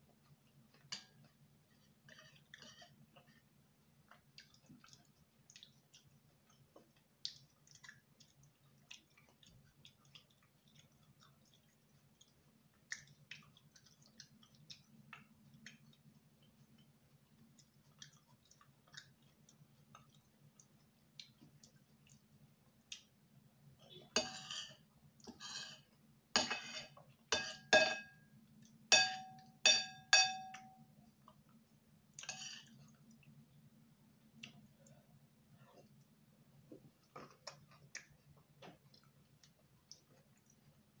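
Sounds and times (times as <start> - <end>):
mouth clicks of chewing: 4.1 - 16.1, 17.5 - 23.1, 34.4 - 35.0
utensil clinking against dish: 26.4 - 28.2, 28.9 - 30.7.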